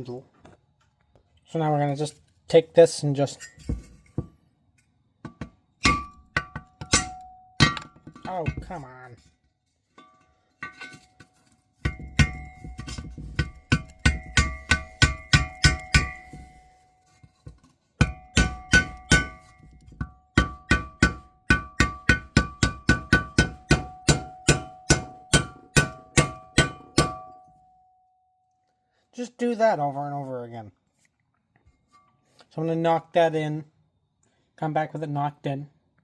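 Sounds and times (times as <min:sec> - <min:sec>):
hammer striking hammer: 0:05.3 - 0:08.8, 0:11.8 - 0:16.6, 0:18.0 - 0:27.5.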